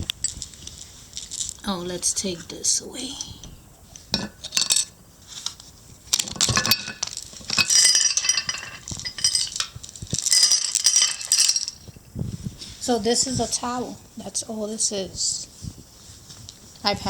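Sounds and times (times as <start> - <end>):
small pieces clinking and rattling: 0.0 - 1.6, 4.2 - 5.0, 6.1 - 12.0.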